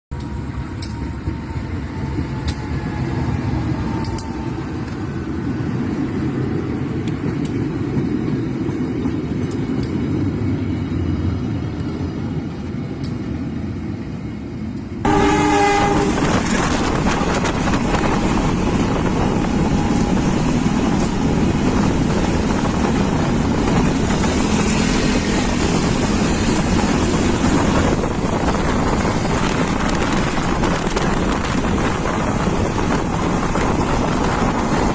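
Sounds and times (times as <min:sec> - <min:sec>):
freight train rumbling past: 0:00.1 - 0:34.9
train horn note: 0:15.0 - 0:16.9.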